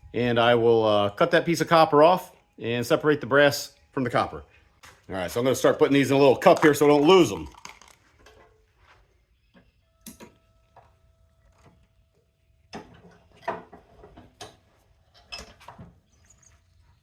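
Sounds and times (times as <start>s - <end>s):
hand tools clicking and clanking: 4.8s - 8.6s.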